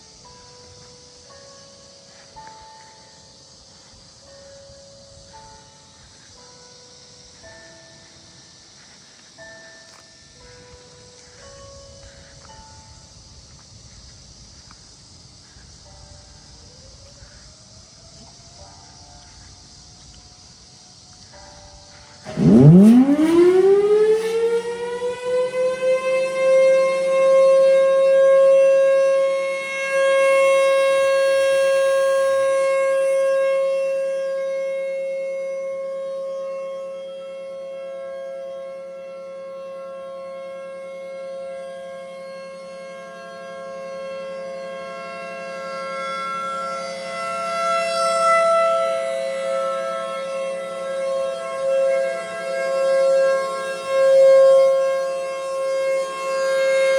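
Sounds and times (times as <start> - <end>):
higher siren tone: 22.2 - 56.9
tornado sirens wailing: 22.2 - 56.9.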